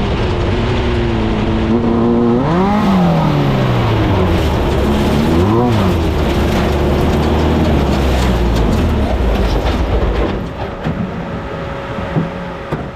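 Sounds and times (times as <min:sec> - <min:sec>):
race car engine revving: 0:00.0 - 0:12.9
chassis rattling: 0:02.8 - 0:12.2
knocks and clatter: 0:03.4 - 0:12.9.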